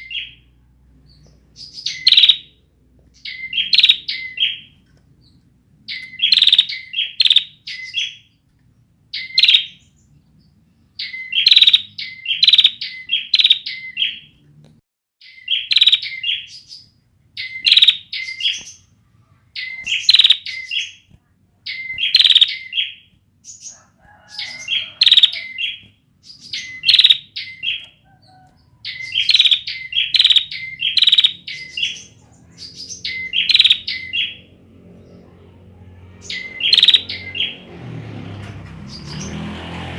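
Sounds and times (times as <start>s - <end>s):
bird chirping in short bursts: 0.0s - 2.6s, 3.2s - 8.3s, 9.1s - 10.0s, 11.0s - 14.4s, 15.2s - 18.9s, 19.6s - 21.0s, 21.7s - 23.7s, 24.6s - 34.4s, 36.2s - 37.6s.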